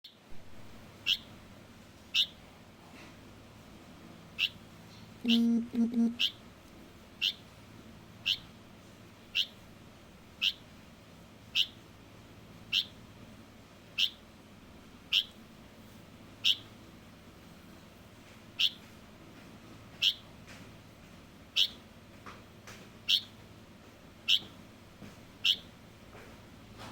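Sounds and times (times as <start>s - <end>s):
bird giving high cheeps: 5.2s - 6.4s.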